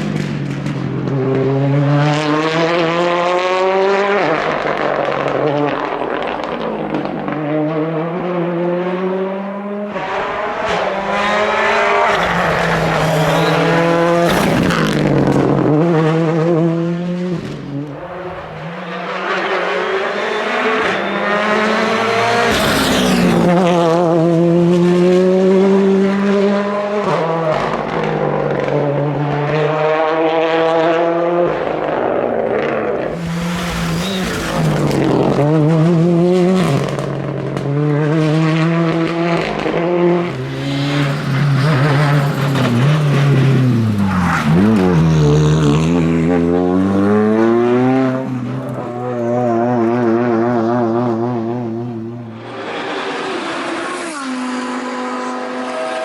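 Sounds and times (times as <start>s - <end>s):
rally car engine revving hard: 0.0s - 56.0s.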